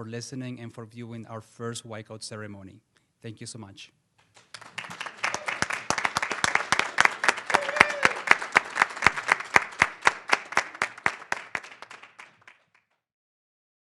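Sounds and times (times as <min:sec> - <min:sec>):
audience applauding: 0:04.4 - 0:13.0.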